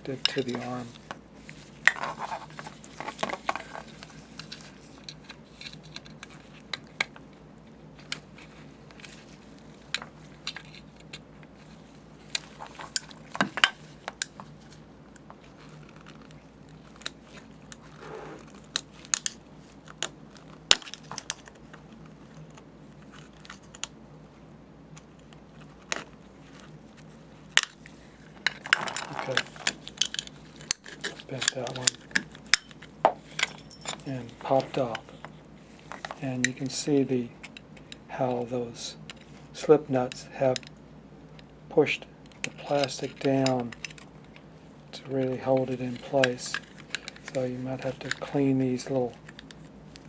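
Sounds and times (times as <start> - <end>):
low steady hum: 0.0 - 50.0
plastic handling sounds: 42.3 - 50.0.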